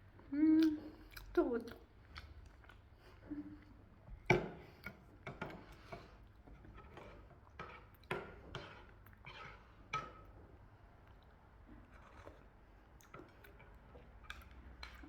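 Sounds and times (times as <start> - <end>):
close chewing mouth noises: 0.5 - 3.9.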